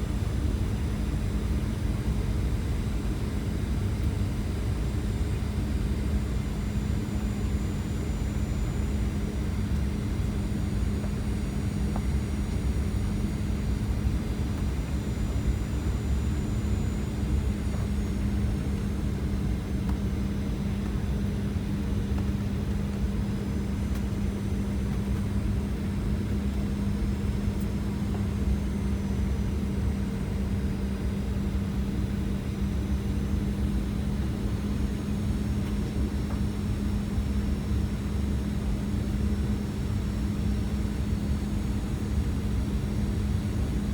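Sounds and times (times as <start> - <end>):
airliner cabin engine drone: 0.0 - 43.9.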